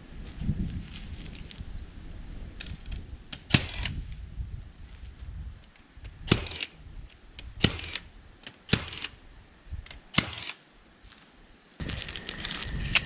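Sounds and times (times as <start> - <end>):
stapler firing into wood: 3.4 - 4.0, 6.2 - 6.7, 7.6 - 8.0, 8.7 - 9.1, 10.1 - 10.6.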